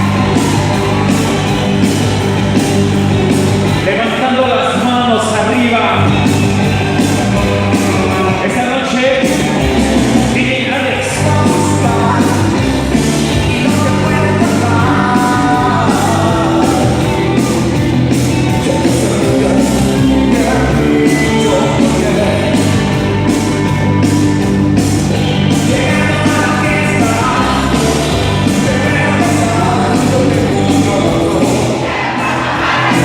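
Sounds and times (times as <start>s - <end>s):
latin dance music with singing: 0.0s - 33.0s.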